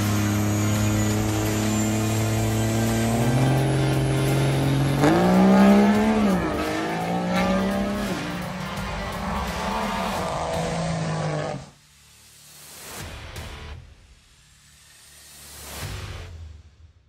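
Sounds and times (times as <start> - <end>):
race engine at high revs: 0.0 - 11.8.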